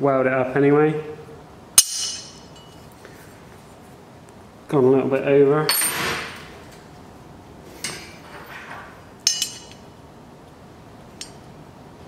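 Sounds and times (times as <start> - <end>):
metal bracket clinking: 1.8 - 2.9, 9.2 - 9.9, 11.2 - 11.5.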